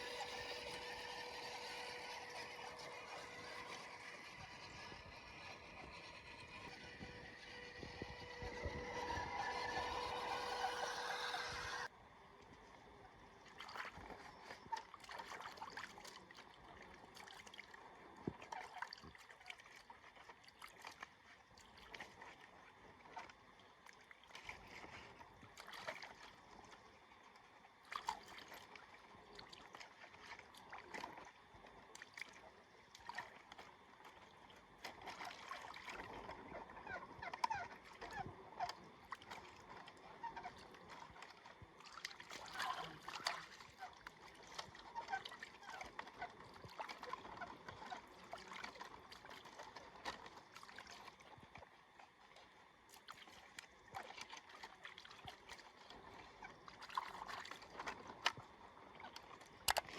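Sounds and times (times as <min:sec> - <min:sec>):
water splashing and trickling: 0:00.0 - 0:11.9, 0:13.4 - 0:59.9.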